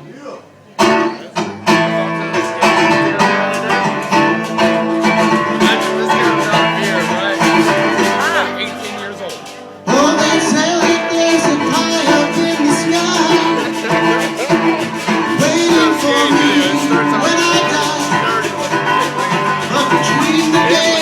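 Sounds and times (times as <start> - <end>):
acoustic guitar strumming: 0.4 - 21.0
person singing: 2.5 - 21.0.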